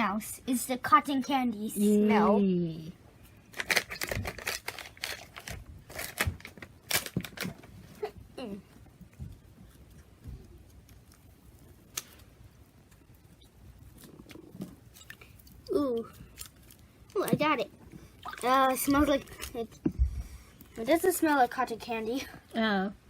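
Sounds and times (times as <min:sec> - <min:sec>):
plastic wrapper tearing and crinkling: 0:03.5 - 0:07.8.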